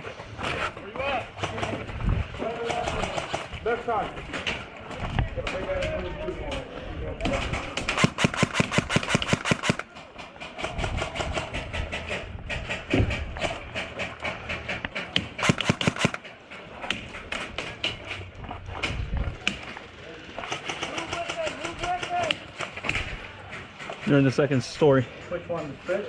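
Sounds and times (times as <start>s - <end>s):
airsoft guns firing bursts: 7.3s - 12.0s, 15.1s - 16.4s, 20.4s - 23.0s.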